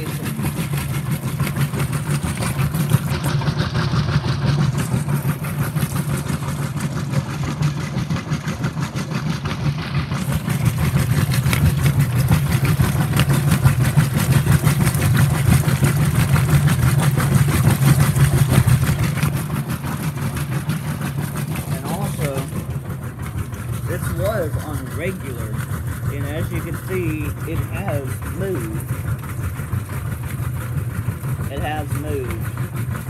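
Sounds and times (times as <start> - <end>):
washing machine churning: 0.0 - 33.0
washing machine motor hum: 0.0 - 33.0.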